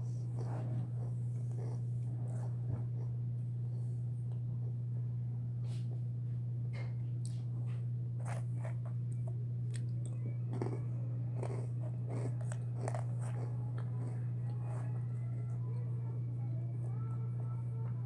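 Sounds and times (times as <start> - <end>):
low electrical hum: 0.0 - 18.0
person chewing crunchy food: 8.2 - 15.6.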